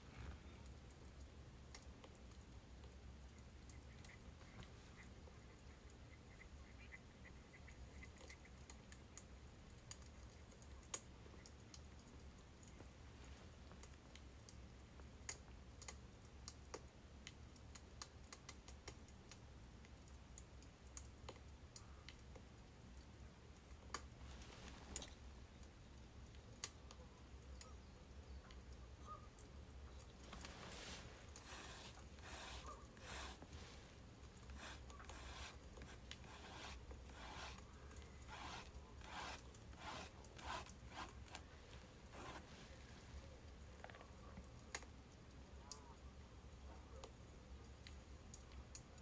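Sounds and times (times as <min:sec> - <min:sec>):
logs crackling in fire: 0:29.9 - 0:43.0.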